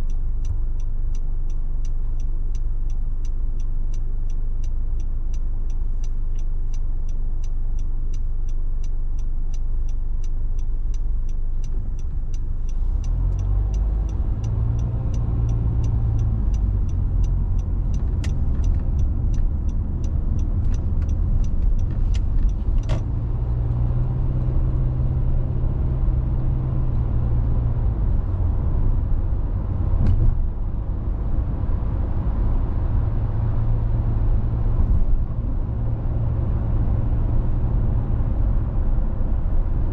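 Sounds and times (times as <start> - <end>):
regular ticking: 0.0 - 22.9
car engine and tyre rumble: 0.0 - 39.9.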